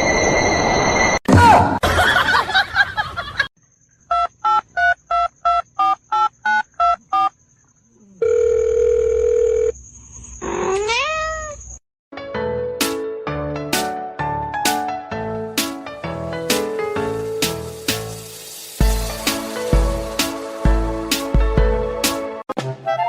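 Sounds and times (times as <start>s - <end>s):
steady dial tone: 8.2s - 9.7s.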